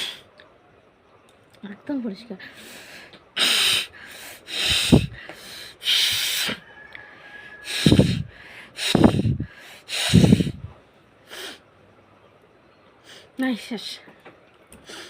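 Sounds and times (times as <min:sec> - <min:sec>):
forceful nose blowing: 0:03.4 - 0:06.6, 0:07.6 - 0:10.7.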